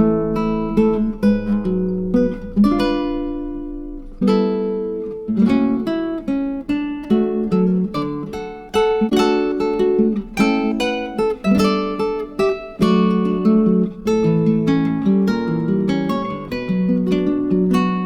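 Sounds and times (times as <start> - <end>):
strummed acoustic guitar chords: 0.0 - 18.0.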